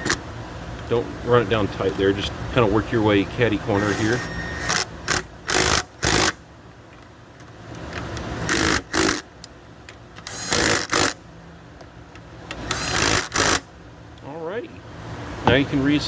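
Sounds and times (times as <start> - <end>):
cordless power wrench spinning bolts: 8.5 - 9.3, 10.2 - 11.2, 12.6 - 13.6.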